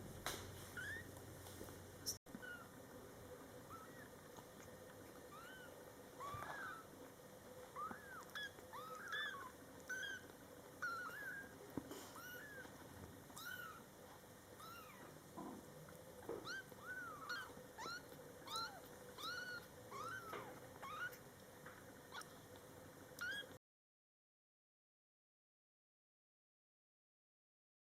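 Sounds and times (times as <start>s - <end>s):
kitten mewing: 5.2s - 6.9s, 7.7s - 12.7s, 13.4s - 13.9s, 16.3s - 21.2s.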